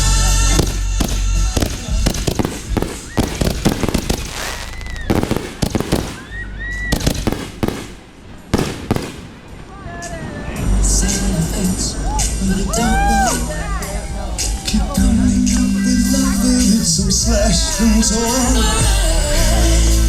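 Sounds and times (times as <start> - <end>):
fireworks bangs and crackles: 0.4 - 10.2.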